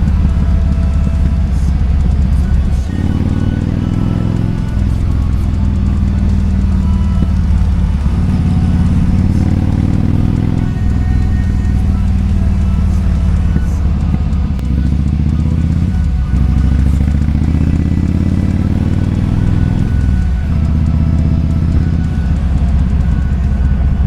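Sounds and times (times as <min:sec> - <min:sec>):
motorcycle engine revving: 0:00.0 - 0:24.0.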